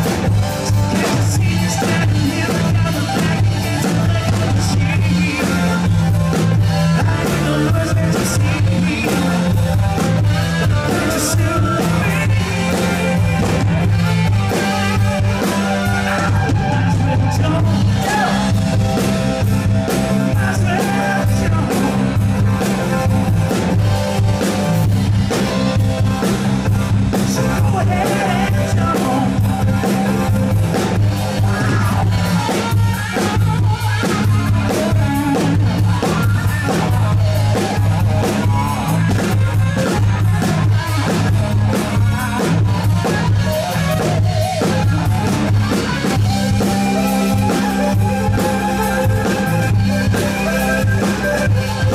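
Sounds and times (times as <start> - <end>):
person singing: 0.0 - 10.0, 10.6 - 18.6, 20.3 - 23.0, 27.1 - 30.4
drum kit beat: 0.0 - 51.9
rock band playing live: 0.0 - 51.9.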